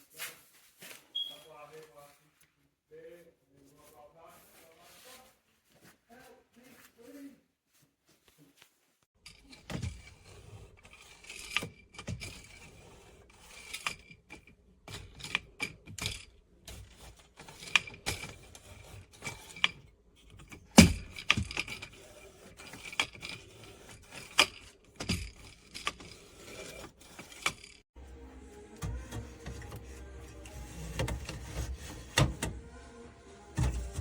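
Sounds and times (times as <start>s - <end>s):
cans scraping along plastic: 9.3s - 27.8s, 28.8s - 34.0s.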